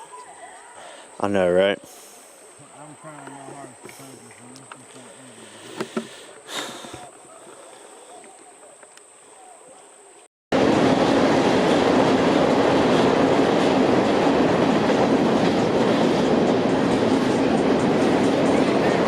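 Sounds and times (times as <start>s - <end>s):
train rumbling and clattering: 10.6s - 19.0s.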